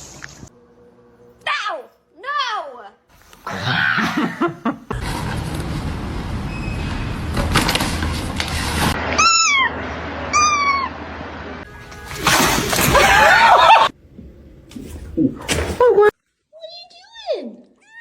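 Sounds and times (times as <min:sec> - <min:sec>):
cat meowing: 0:09.2 - 0:11.0.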